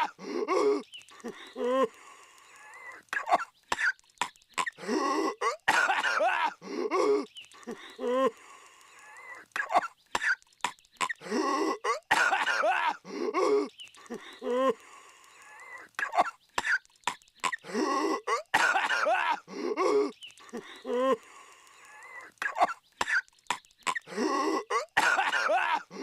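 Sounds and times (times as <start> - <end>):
cartoon voice coughing violently: 4.8 - 7.3, 11.0 - 13.7, 17.4 - 20.1, 23.9 - 26.0.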